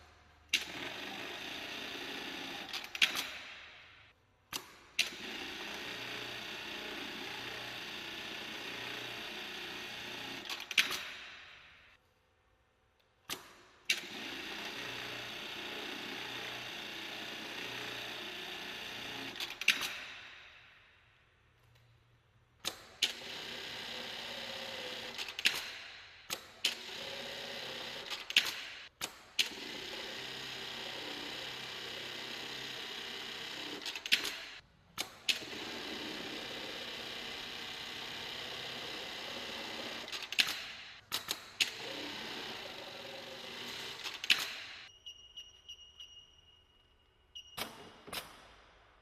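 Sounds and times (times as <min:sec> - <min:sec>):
sewing machine running: 0:00.6 - 0:03.3, 0:05.1 - 0:11.1, 0:14.0 - 0:19.6, 0:23.0 - 0:25.5, 0:26.6 - 0:28.6, 0:29.4 - 0:34.6, 0:35.3 - 0:40.8, 0:41.6 - 0:44.8
sharp clicks: 0:40.1 - 0:41.8.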